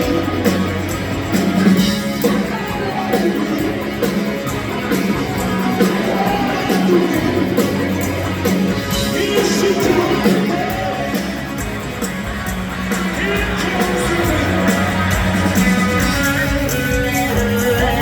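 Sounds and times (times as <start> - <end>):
live rock band playing: 0.0 - 18.0
person singing: 1.6 - 8.3, 8.9 - 11.6, 13.1 - 18.0.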